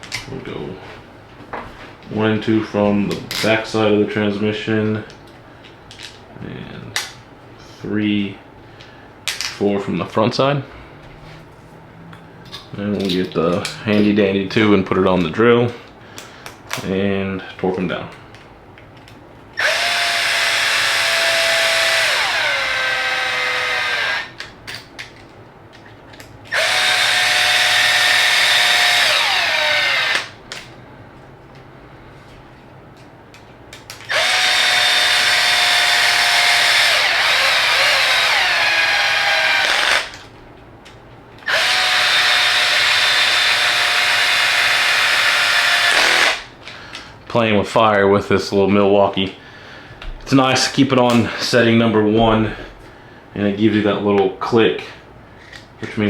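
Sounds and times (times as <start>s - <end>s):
cordless drill whining: 19.6s - 24.4s, 26.5s - 30.4s, 34.1s - 40.2s, 41.4s - 46.5s
drill clutch clicking: 19.6s - 24.5s, 26.5s - 30.4s, 34.0s - 40.2s, 41.4s - 46.4s.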